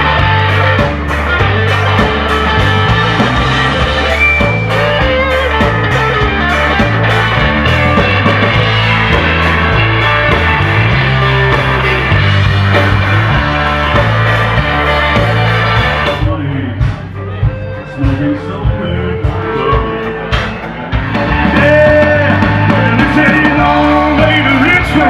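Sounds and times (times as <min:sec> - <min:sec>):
rock music: 0:00.0 - 0:25.0.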